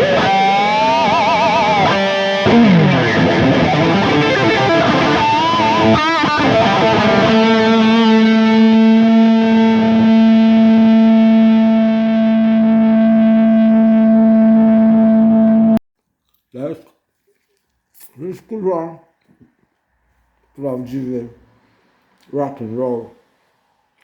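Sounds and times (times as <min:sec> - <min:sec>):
distorted electric guitar: 0:00.0 - 0:15.8.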